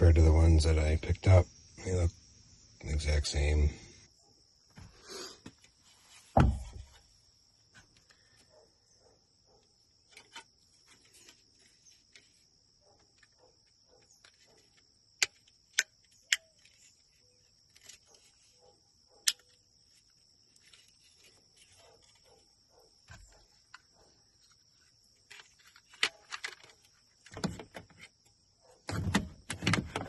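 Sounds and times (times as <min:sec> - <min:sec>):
thump: 0:06.3 - 0:07.0
light plastic clicks and rustles: 0:23.1 - 0:28.2.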